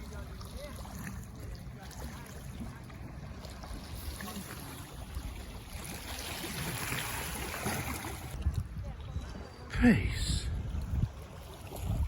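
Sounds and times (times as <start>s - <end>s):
small waves washing onto shore: 0.0s - 12.0s
wind on microphone: 7.8s - 12.0s.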